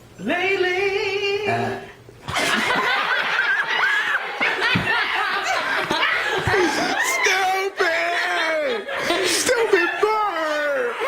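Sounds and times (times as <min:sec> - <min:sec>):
people laughing loudly: 0:02.3 - 0:11.0.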